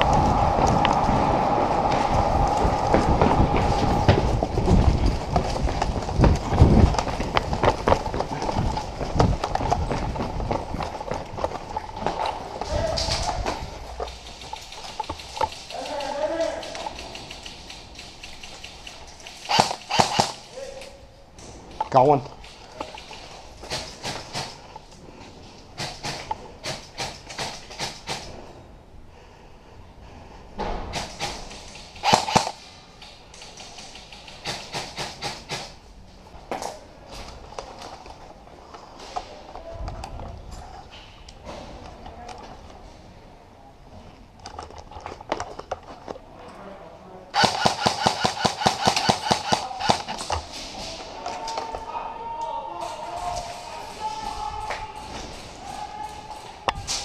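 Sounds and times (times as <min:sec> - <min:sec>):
steady noisy background: 0:00.0 - 0:52.1
airsoft gun shots: 0:19.4 - 0:20.5, 0:30.9 - 0:32.6, 0:47.4 - 0:50.2.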